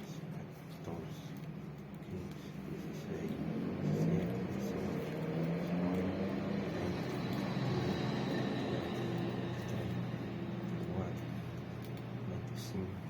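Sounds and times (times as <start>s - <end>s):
vehicle engine running: 2.6s - 13.0s.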